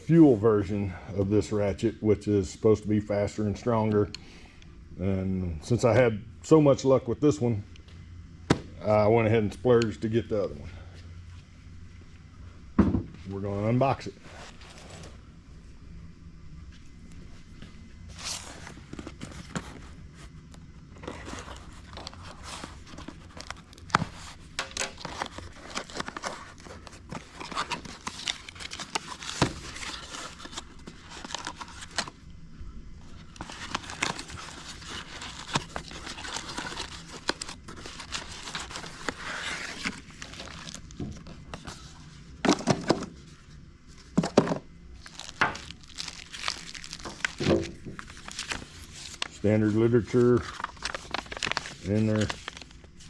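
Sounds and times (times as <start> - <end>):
cardboard and plastic crinkling: 21.0 - 32.2, 33.1 - 53.0.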